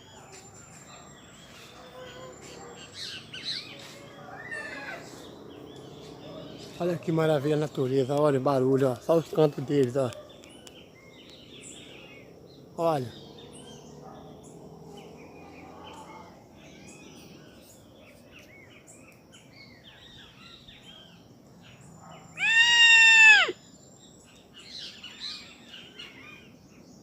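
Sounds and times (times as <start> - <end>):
birds chirping and twittering: 0.0 - 27.0
loud drawn-out animal call: 4.3 - 6.0, 22.4 - 23.6.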